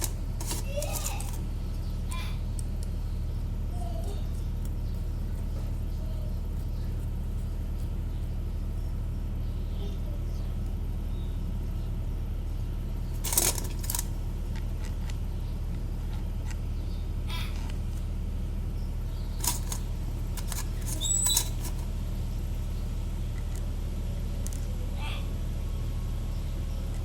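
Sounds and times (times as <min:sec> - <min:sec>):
metal parts clinking: 0:00.0 - 0:01.4, 0:13.2 - 0:14.2, 0:19.4 - 0:21.9
steady low hum: 0:00.0 - 0:27.0.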